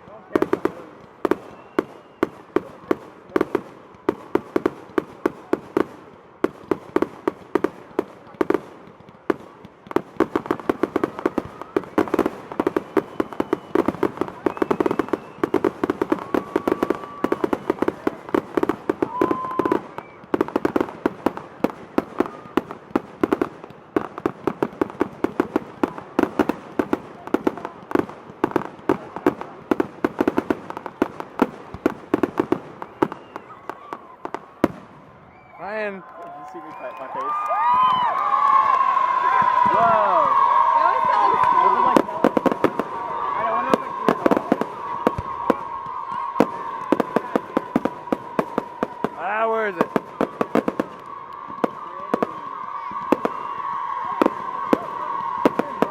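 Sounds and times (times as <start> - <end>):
fireworks popping and banging: 0.0 - 55.9
firework whistles: 1.2 - 2.8, 10.7 - 18.1, 19.0 - 20.3, 32.4 - 33.8, 34.7 - 35.8, 39.6 - 55.9.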